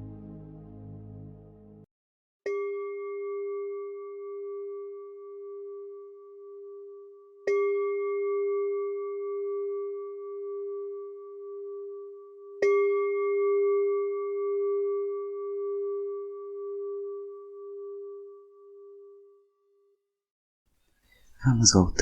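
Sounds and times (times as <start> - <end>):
background music: 0.0 - 1.9
singing bowl ringing: 2.5 - 20.0.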